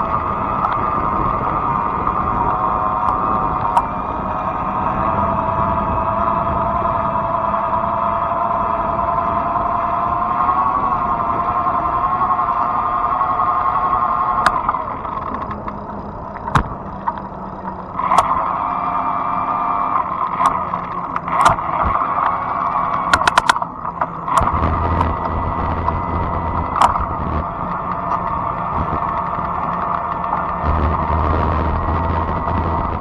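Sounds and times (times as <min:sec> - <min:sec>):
bicycle tyre rumble: 0:00.0 - 0:33.0
e-bike motor whining hum: 0:00.0 - 0:33.0
tires rolling: 0:00.0 - 0:33.0
clicks and knocks from bumps: 0:20.2 - 0:33.0.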